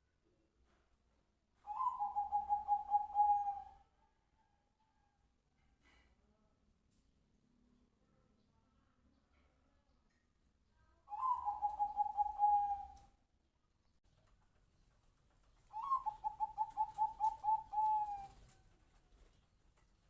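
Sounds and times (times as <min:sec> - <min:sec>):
dove cooing: 0:01.6 - 0:03.8, 0:11.1 - 0:13.1, 0:15.7 - 0:18.6.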